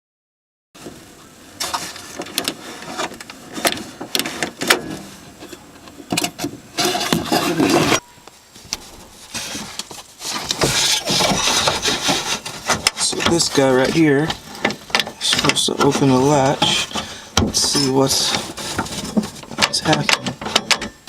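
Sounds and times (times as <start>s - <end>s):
rubbing sound: 8.6s - 17.0s.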